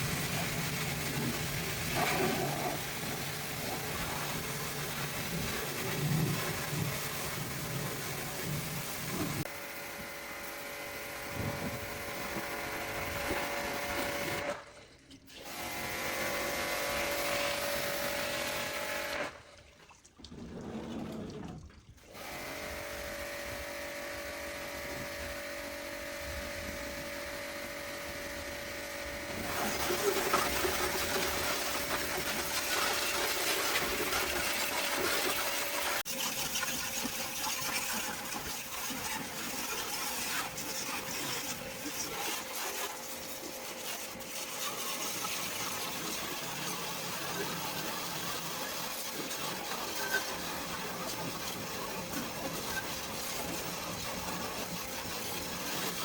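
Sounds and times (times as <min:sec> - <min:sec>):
small electric motor humming: 0:22.2 - 0:29.5.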